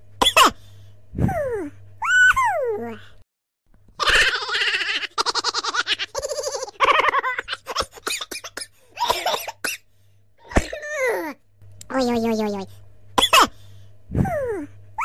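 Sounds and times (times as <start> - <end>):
high-pitched giggling cackles: 4.0 - 8.6.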